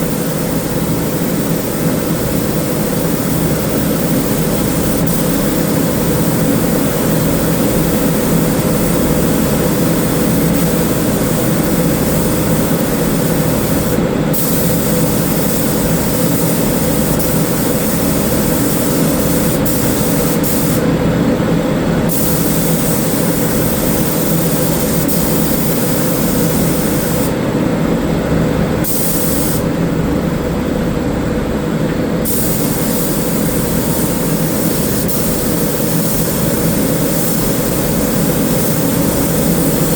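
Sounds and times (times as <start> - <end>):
spray gun hissing: 0.0 - 20.9, 22.1 - 27.4, 28.8 - 29.8, 32.2 - 39.9
low machine hum: 29.6 - 39.9.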